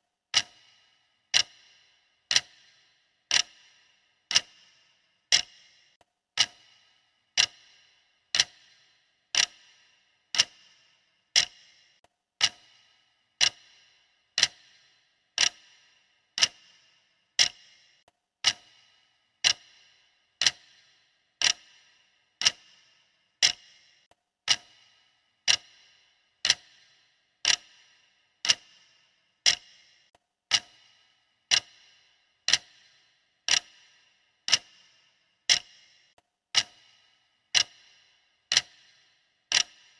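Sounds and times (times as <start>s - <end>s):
clock ticking: 0.0s - 39.9s.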